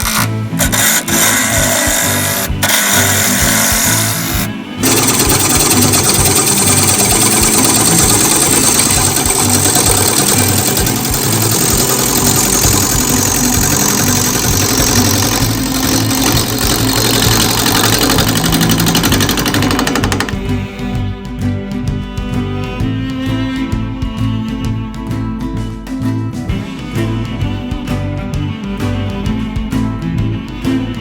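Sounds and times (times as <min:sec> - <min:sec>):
turning tool cutting wood: 0:00.0 - 0:21.0
lathe humming: 0:00.0 - 0:21.9.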